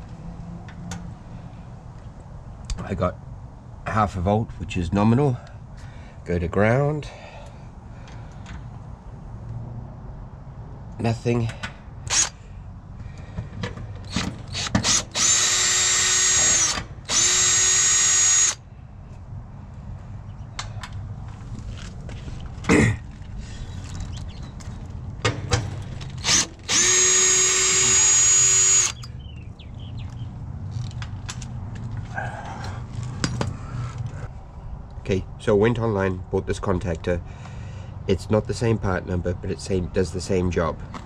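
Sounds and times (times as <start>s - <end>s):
cordless drill running: 12.1s - 12.3s, 14.1s - 18.6s, 26.2s - 29.0s
clicks and knocks from handling parts: 20.5s - 26.7s, 30.0s - 34.2s.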